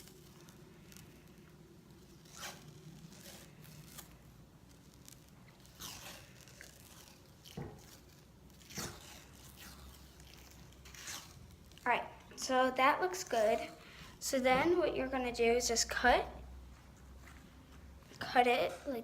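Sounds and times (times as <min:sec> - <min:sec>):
tape peeling rasps: 0:00.0 - 0:12.3.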